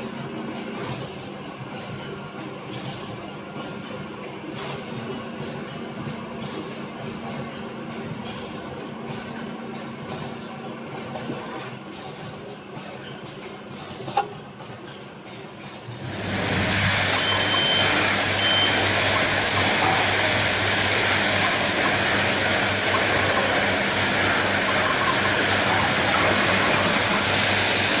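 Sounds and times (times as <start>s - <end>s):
machinery running loudly: 15.8s - 28.0s.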